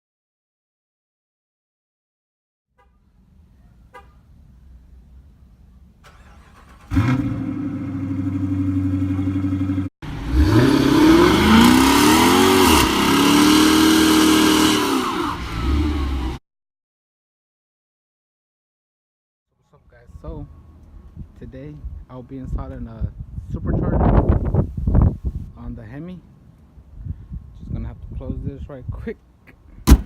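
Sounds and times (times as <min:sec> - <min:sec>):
car engine starting and revving: 0:06.0 - 0:16.4.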